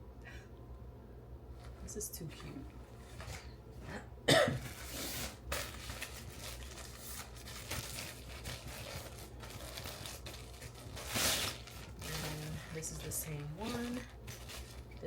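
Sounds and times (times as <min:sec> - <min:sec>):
packaging crinkling and rustling: 0:01.6 - 0:03.5, 0:04.6 - 0:15.0
packaging tearing: 0:04.7 - 0:15.0.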